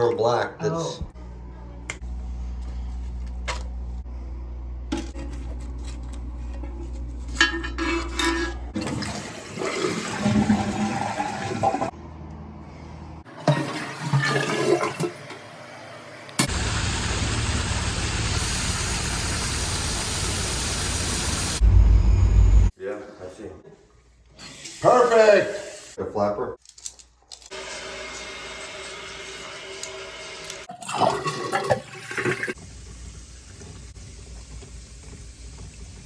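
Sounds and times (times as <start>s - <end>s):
toilet flushing: 7.4s - 12.0s, 13.2s - 21.6s, 27.5s - 36.0s
toilet tank refilling hiss: 16.4s - 21.6s, 24.4s - 26.0s, 27.5s - 36.0s.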